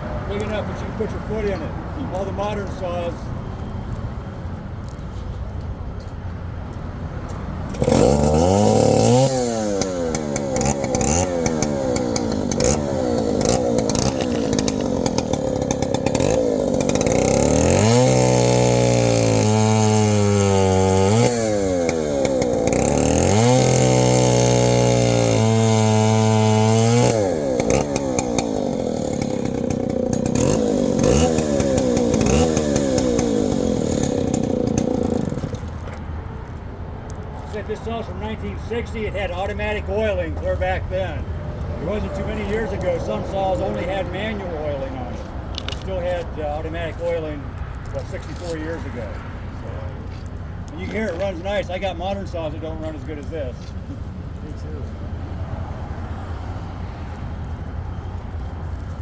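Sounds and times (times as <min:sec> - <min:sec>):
chainsaw engine revving: 0:07.6 - 0:36.6, 0:41.0 - 0:53.3.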